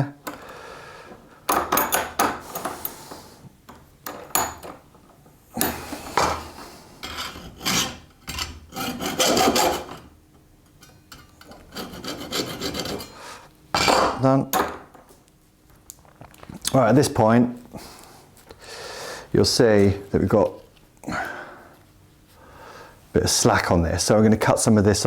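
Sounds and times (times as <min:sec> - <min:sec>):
hacksaw rasping through cable: 0:07.0 - 0:10.1, 0:11.4 - 0:13.2.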